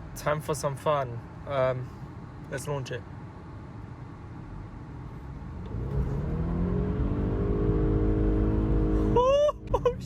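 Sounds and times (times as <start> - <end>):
car engine revving hard: 5.6 - 9.2.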